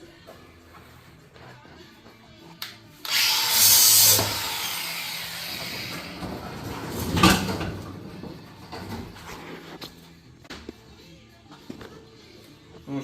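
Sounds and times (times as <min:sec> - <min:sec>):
metal scraping with screech: 0:03.5 - 0:09.8.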